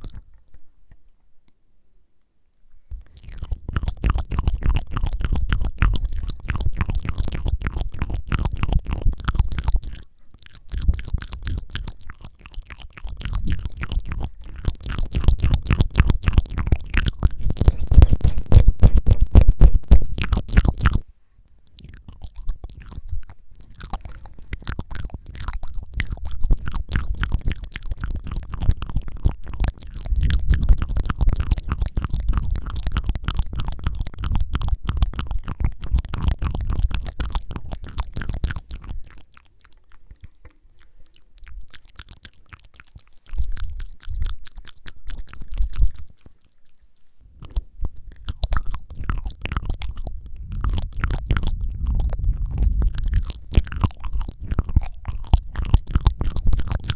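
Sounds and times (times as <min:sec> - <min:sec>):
wet tongue fluttering clicks: 0:00.0 - 0:00.6, 0:02.9 - 0:56.9
deep microphone rumble: 0:13.2 - 0:21.1, 0:47.2 - 0:56.9.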